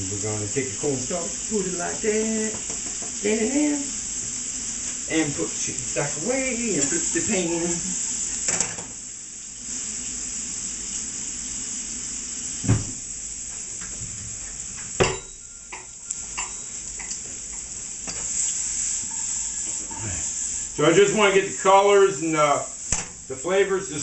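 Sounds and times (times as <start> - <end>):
vegetables sizzling in butter: 0.0 - 24.0
pan or utensil clattering: 15.0 - 18.4.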